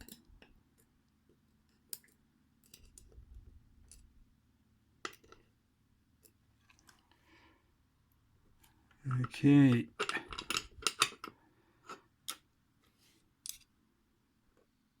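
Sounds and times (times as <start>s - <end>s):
small metal parts clicking: 10.0s - 11.3s.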